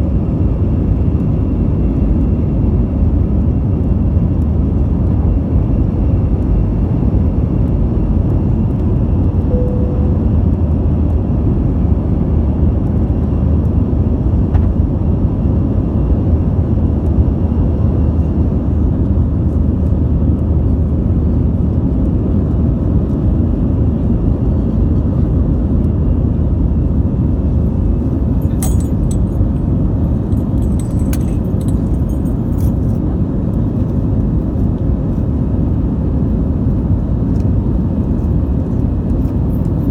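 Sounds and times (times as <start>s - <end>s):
airplane engines rumbling in cabin: 0.0s - 39.9s
light clicks and rattles: 28.4s - 33.0s.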